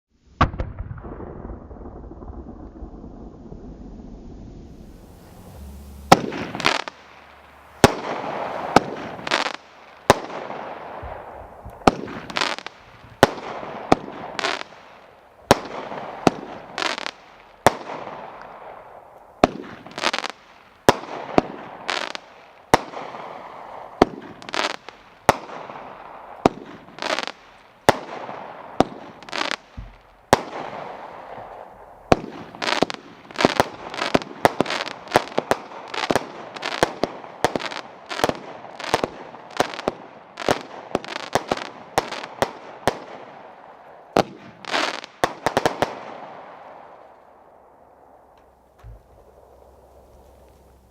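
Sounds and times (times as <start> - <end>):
crackling hiss: 0.1 - 50.9
fireworks cake firing shots: 7.8 - 14.9, 19.4 - 43.4, 44.2 - 47.0.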